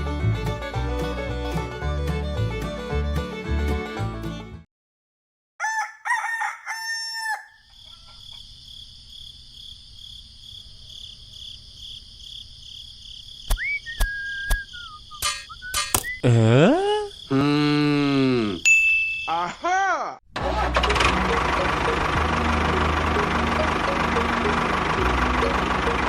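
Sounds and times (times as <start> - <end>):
rooster crowing: 5.6 - 8.3
sharp clicks: 13.5 - 16.2
sliding whistle-like tones: 13.5 - 16.3
low hum: 20.8 - 26.0.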